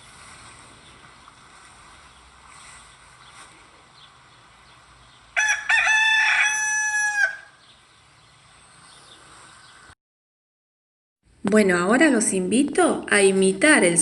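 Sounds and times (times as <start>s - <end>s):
faint hiss: 0.0s - 4.9s
rooster crowing: 5.4s - 7.6s.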